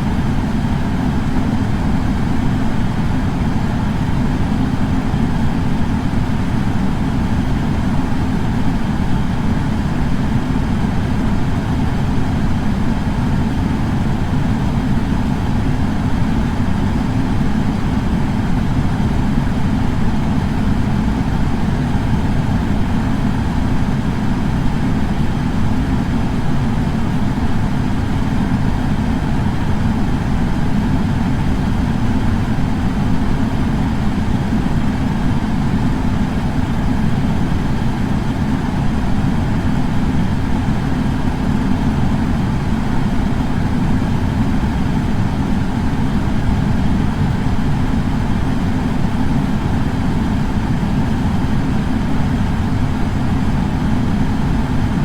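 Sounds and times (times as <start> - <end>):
air purifier fan running: 0.0 - 55.0.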